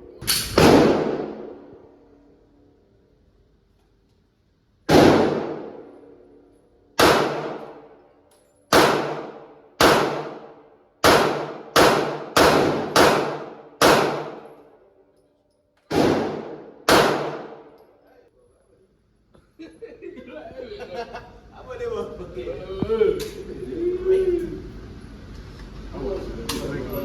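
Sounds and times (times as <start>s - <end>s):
gunshots: 0.5s - 1.6s, 4.9s - 5.9s, 7.0s - 7.8s, 8.7s - 14.5s, 15.9s - 17.7s.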